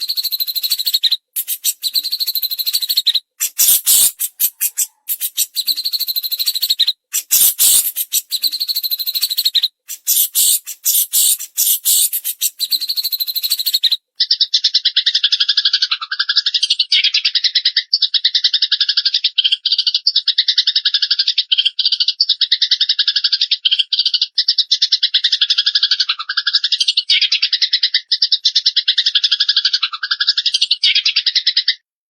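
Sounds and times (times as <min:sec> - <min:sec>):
songbird rattling trill: 0:00.0 - 0:13.9
harsh bird chirping: 0:00.0 - 0:15.7.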